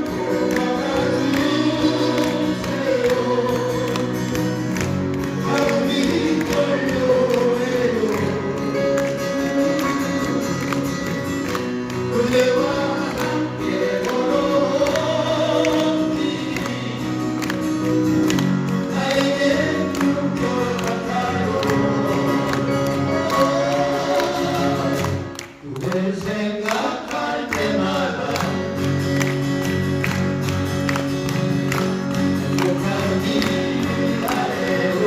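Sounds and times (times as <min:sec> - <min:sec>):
male vocal quartet singing ballad: 0:00.0 - 0:04.6, 0:05.2 - 0:09.8, 0:11.9 - 0:17.6, 0:18.7 - 0:28.9, 0:32.5 - 0:35.0
strummed acoustic guitars: 0:00.0 - 0:35.0.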